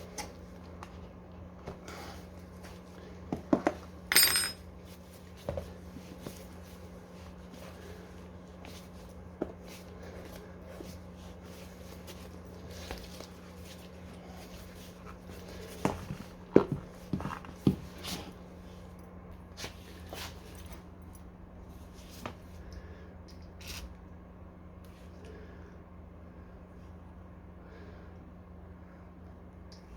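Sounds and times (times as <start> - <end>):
steady low hum: 0.0 - 29.9
hand tools knocking and clinking: 4.1 - 4.6.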